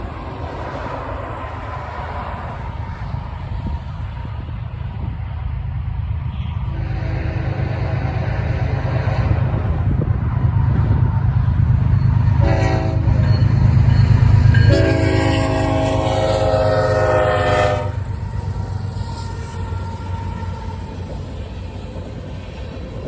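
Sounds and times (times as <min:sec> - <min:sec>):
diesel locomotive rumbling: 0:00.0 - 0:23.0
locomotive air horn blasts: 0:06.7 - 0:09.8, 0:12.4 - 0:13.3, 0:14.6 - 0:18.1.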